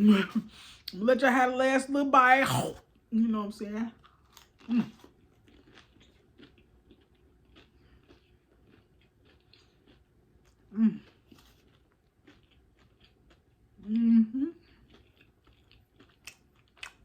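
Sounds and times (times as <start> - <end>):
person chewing food: 4.0 - 17.0.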